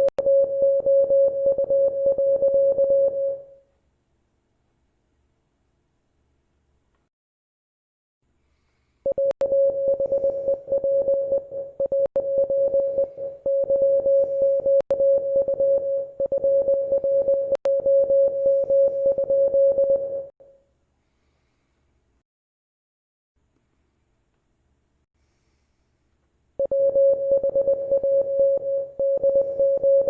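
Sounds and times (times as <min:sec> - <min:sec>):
morse code tone: 0:00.0 - 0:03.5, 0:09.1 - 0:20.3, 0:26.6 - 0:30.0.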